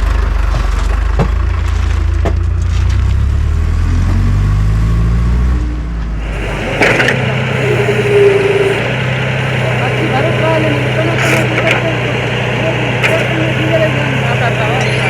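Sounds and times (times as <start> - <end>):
tractor diesel engine running: 0.0 - 3.2, 5.9 - 15.0
backhoe digging mud: 6.2 - 15.0
hissing scraping noise: 6.2 - 15.0.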